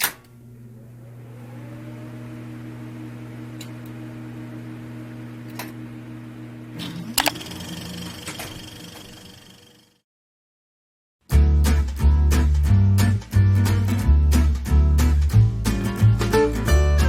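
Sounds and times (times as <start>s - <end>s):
small electric motor humming: 6.8s - 10.0s.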